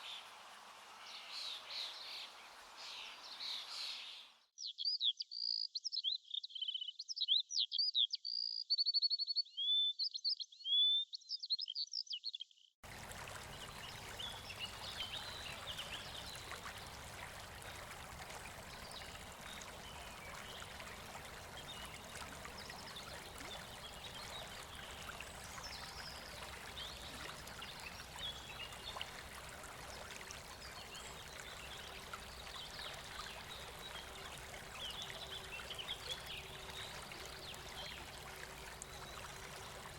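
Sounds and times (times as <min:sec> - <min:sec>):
river water rushing: 0:12.9 - 0:39.9.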